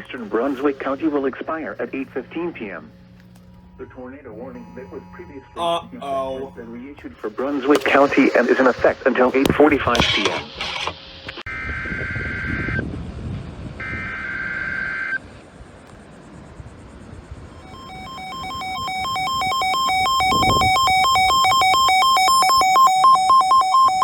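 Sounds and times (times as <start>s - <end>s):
digital data tones: 3.6s - 11.0s, 17.6s - 24.0s
pulsing two-pitch alert tone: 3.7s - 6.9s, 17.6s - 24.0s.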